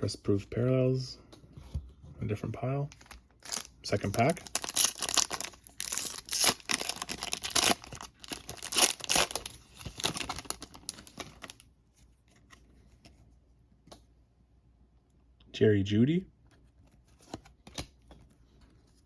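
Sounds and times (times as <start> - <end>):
wrapper tearing and crinkling: 2.9 - 11.6.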